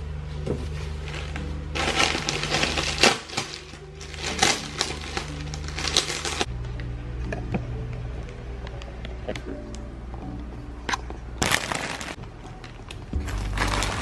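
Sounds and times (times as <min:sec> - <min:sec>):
background music: 0:00.0 - 0:14.0
packaging crinkling and rustling: 0:00.7 - 0:06.5, 0:11.4 - 0:14.0.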